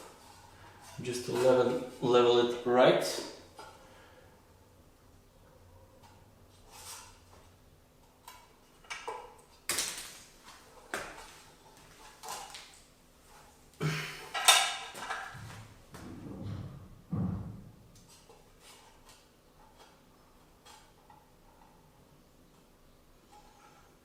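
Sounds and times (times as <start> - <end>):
knocks and clatter of bracket: 14.3 - 18.3.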